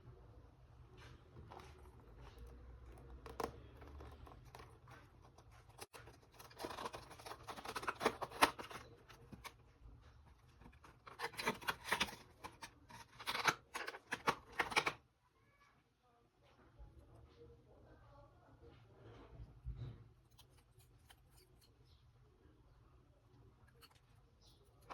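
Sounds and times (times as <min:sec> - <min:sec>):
packaging rustling and scratching: 0:01.1 - 0:15.0.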